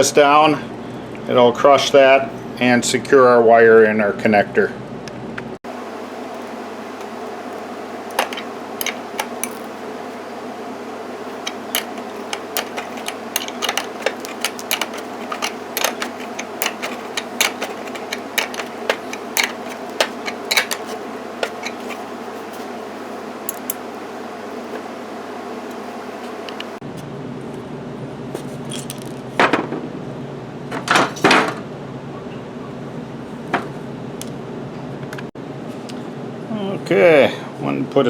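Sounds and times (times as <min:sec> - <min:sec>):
steady background hum: 0:00.0 - 0:38.0
sharp metal clicks: 0:11.4 - 0:22.0.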